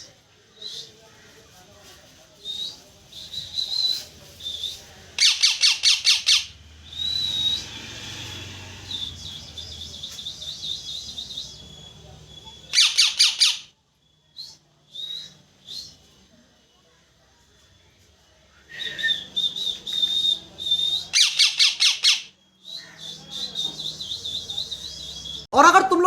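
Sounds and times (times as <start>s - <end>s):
parrot chirping and trilling: 3.2s - 13.8s, 19.2s - 25.4s.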